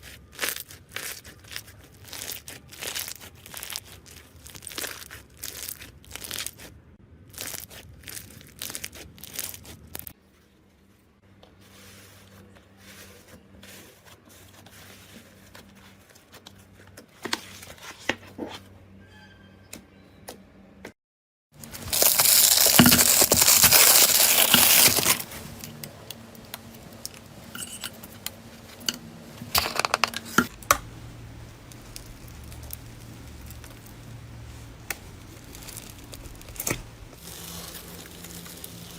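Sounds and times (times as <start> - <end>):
slime clicking and crackling: 0.1 - 6.7, 7.3 - 10.1, 21.6 - 25.2, 30.5 - 38.9.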